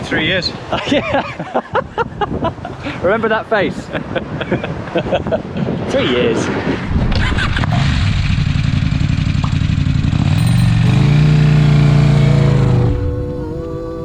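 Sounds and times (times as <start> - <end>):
motorcycle engine revving: 7.5 - 14.0.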